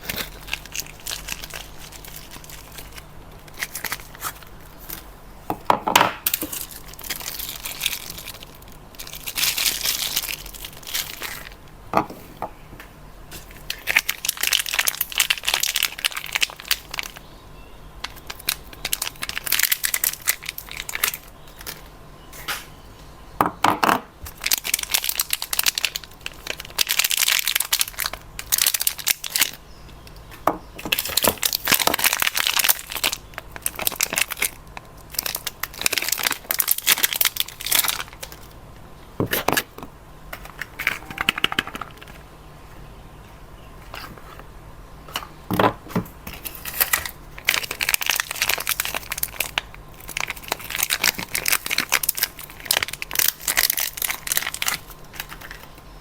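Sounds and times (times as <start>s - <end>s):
wrappers crinkling and tearing: 0.0s - 5.2s, 6.2s - 11.7s, 13.4s - 17.3s, 18.0s - 21.9s, 24.2s - 38.6s, 46.3s - 55.9s.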